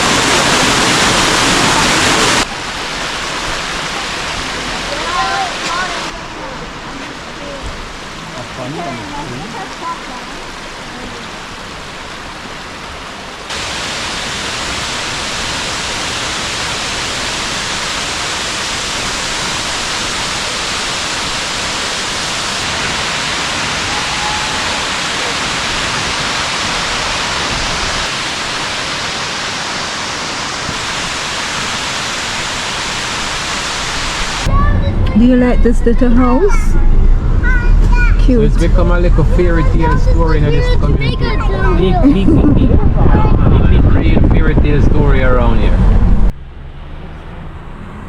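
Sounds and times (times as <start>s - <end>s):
waterfall rushing: 0.0s - 34.6s.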